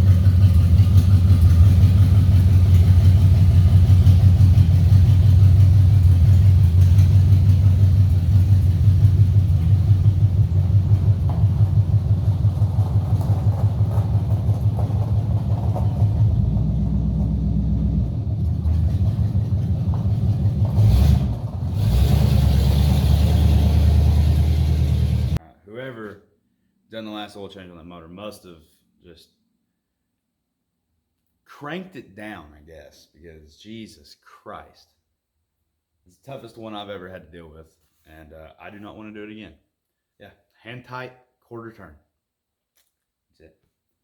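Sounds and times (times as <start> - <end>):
truck engine idling: 0.0 - 25.4.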